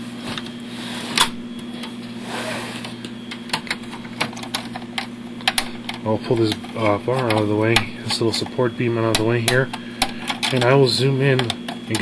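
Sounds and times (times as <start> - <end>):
steady low hum: 0.0 - 12.0
clicks and knocks of computer parts: 3.3 - 12.0.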